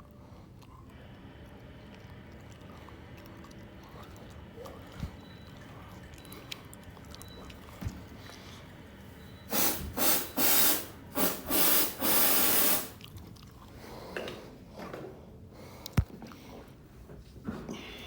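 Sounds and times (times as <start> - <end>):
short bursts of hissing: 9.5 - 13.0.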